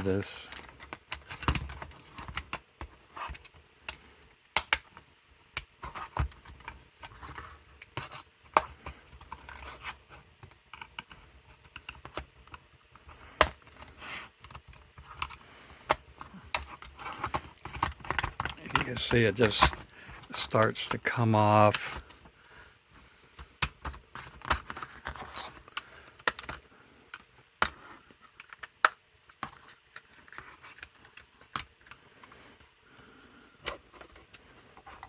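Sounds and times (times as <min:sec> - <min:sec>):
screwdrivers scraping plastic: 0:00.1 - 0:22.3, 0:23.4 - 0:35.0
plastic tabs snapping: 0:03.2 - 0:09.6.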